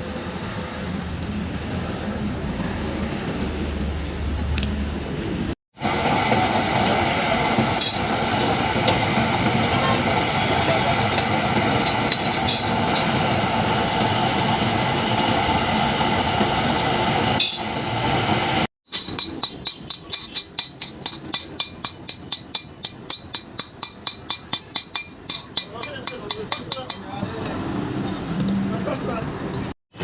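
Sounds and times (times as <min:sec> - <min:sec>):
sharp metallic clink: 0:17.4 - 0:17.7, 0:18.9 - 0:27.1
hammer blows on iron: 0:18.9 - 0:27.1.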